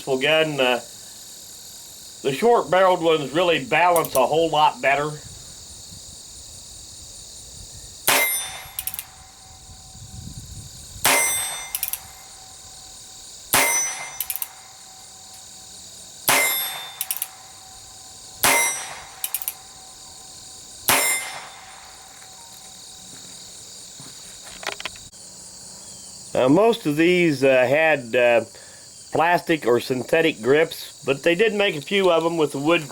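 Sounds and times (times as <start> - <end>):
short metallic ring: 8.1 - 9.4, 11.1 - 12.4, 13.6 - 14.9, 16.3 - 17.8, 18.4 - 20.0, 20.9 - 22.5.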